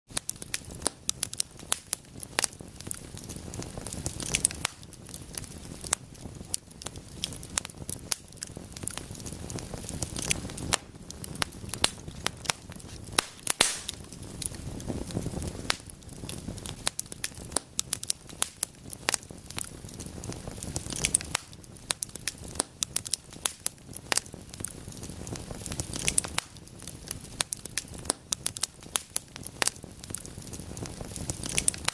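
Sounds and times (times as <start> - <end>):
wood fire crackling and popping: 0.1 - 31.9.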